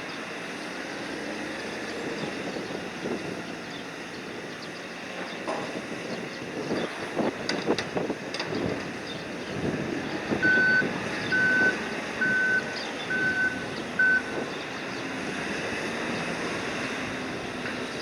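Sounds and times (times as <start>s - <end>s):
electronic warning beeps: 10.4s - 14.4s.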